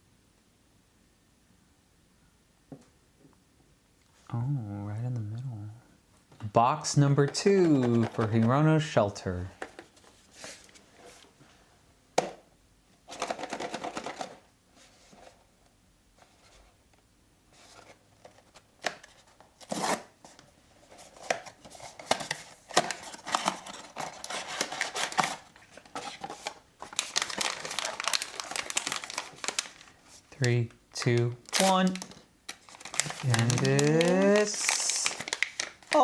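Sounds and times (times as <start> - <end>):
wrapping crinkling and rustling: 7.4 - 11.3, 17.6 - 36.0
packaging click: 31.4 - 36.0.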